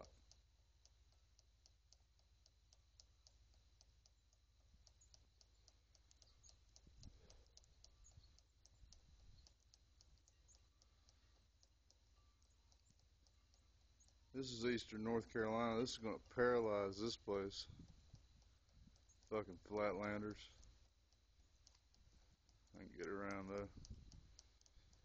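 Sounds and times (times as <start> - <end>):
faint regular ticking: 0.0 - 25.0
faint steady high tone: 10.2 - 20.7.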